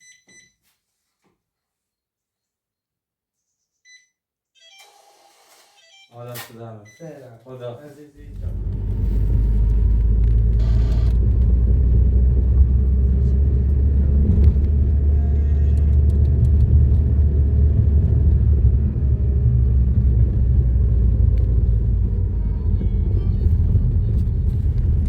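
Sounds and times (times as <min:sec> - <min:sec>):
machine rumbling: 0:08.2 - 0:25.0.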